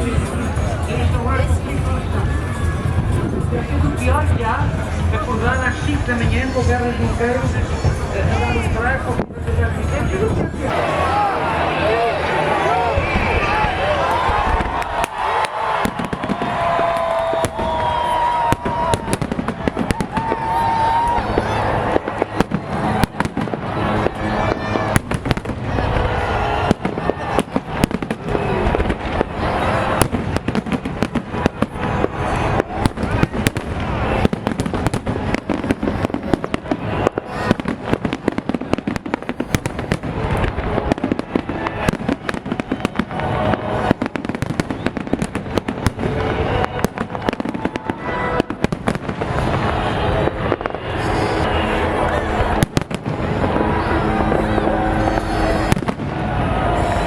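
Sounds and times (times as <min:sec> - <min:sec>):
music playing: 0:00.0 - 0:38.0
fireworks bangs and crackles: 0:00.0 - 0:57.0.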